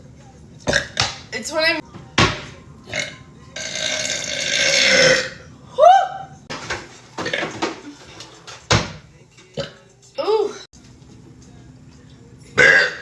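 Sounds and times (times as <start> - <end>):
woman burping: 3.0 - 5.4, 12.6 - 13.0.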